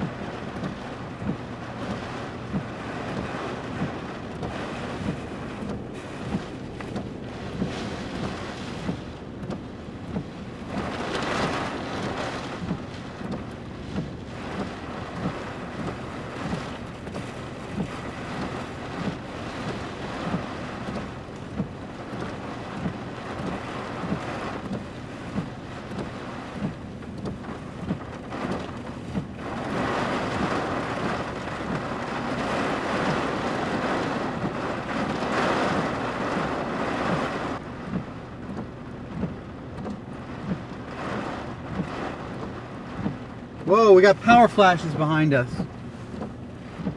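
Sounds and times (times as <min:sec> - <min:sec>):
wind-driven rain: 0:00.0 - 0:46.9
soft regular knocks: 0:45.6 - 0:46.9.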